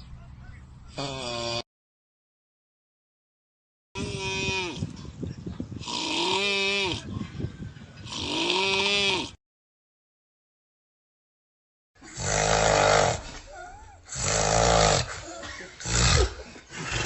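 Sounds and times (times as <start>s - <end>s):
loud snoring: 1.0s - 1.7s, 5.8s - 7.1s, 8.0s - 9.4s, 12.0s - 13.3s, 14.1s - 15.2s, 15.8s - 17.0s.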